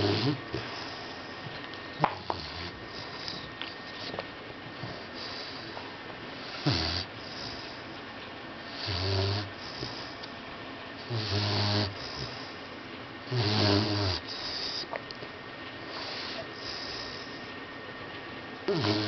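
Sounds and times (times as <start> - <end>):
soft breathing: 0.0 - 1.6, 2.2 - 8.0
puppy snoring: 0.0 - 7.9, 8.7 - 10.3, 11.0 - 15.0, 15.9 - 17.5, 18.6 - 19.0
puppy snorting: 0.0 - 7.9, 8.7 - 10.3, 11.0 - 12.6, 13.3 - 15.0, 15.9 - 17.5, 18.7 - 19.0.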